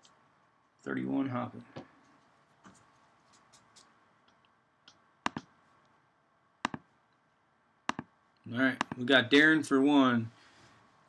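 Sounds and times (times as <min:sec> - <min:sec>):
sharp clicks: 0:03.4 - 0:05.5, 0:06.6 - 0:06.9, 0:07.9 - 0:08.1, 0:08.8 - 0:09.0.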